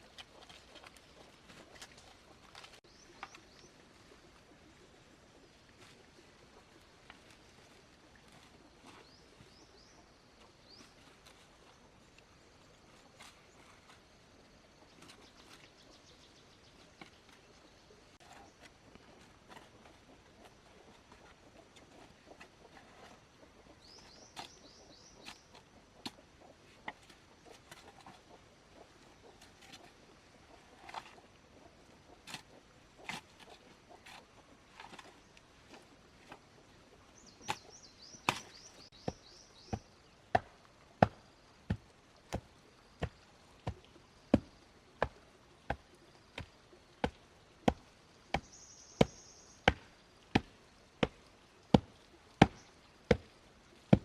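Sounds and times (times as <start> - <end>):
sharp strikes on wood: 40.3 - 42.4.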